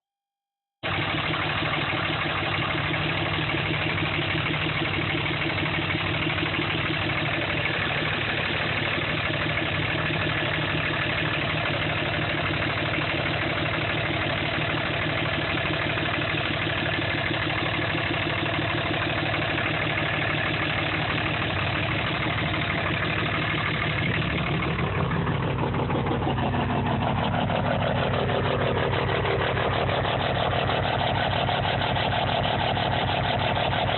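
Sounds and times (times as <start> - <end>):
diesel engine idling: 0.8 - 33.9.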